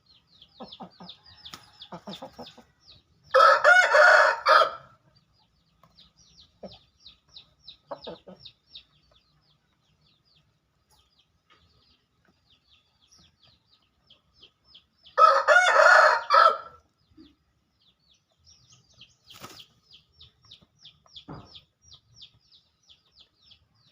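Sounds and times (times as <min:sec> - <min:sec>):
rooster crowing: 0:03.3 - 0:04.9, 0:15.2 - 0:16.8.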